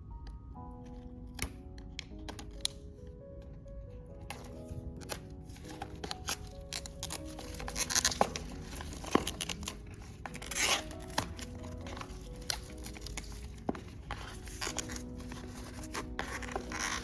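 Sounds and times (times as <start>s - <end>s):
soft background music: 0.0s - 17.0s
packaging clicks and rustling: 4.2s - 17.0s
packaging tearing: 4.4s - 17.0s.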